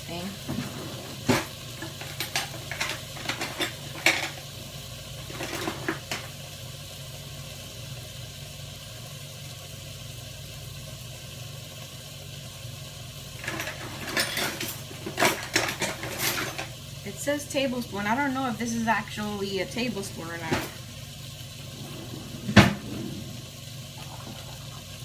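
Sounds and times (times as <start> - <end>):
spoon and containers clinking: 13.4 - 16.7.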